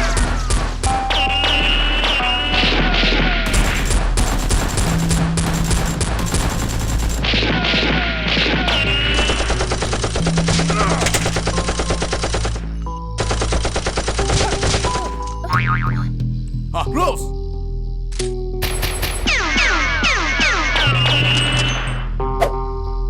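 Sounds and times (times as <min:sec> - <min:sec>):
background music: 0:00.0 - 0:23.0
automatic gunfire: 0:03.5 - 0:12.6.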